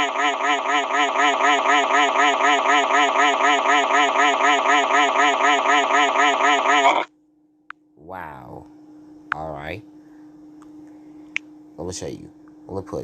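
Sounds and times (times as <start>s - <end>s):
synthetic voice repeating a syllable: 0.0s - 7.1s.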